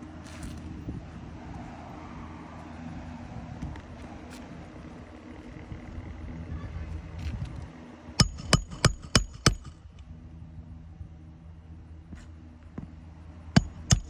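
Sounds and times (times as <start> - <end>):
steady low hum: 4.7 - 14.0
hammer striking nail: 8.2 - 9.8, 13.6 - 14.0.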